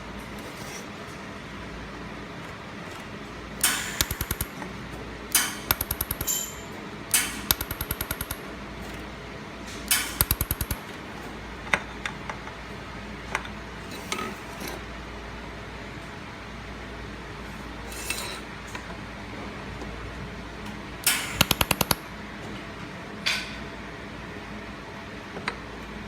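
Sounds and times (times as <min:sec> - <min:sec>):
laser welder crackling and popping: 0:03.8 - 0:04.6, 0:05.7 - 0:06.4, 0:07.5 - 0:08.4, 0:10.2 - 0:10.8, 0:21.4 - 0:22.0
single clicks: 0:09.9 - 0:10.8.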